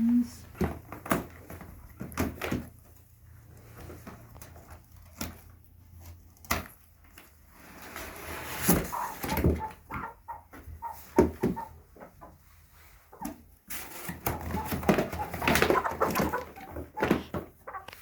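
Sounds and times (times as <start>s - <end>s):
scraping and thuds: 13.3s - 18.0s.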